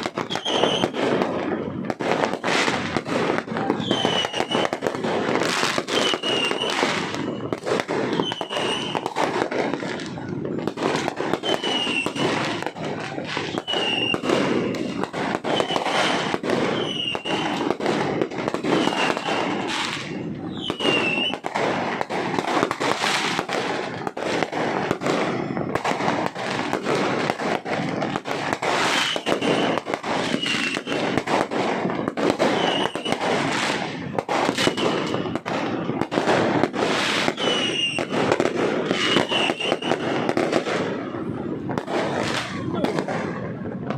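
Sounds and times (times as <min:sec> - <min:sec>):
high falling firework whistles: 0:00.0 - 0:02.8, 0:03.8 - 0:09.3, 0:11.2 - 0:22.1, 0:28.4 - 0:31.3, 0:32.0 - 0:36.0, 0:36.9 - 0:40.4
fireworks bangs and crackles: 0:00.0 - 0:43.9.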